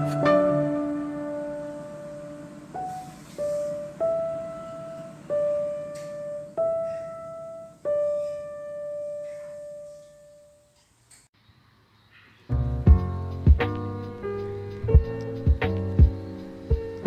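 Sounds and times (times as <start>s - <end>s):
slow piano notes: 0.0s - 10.8s.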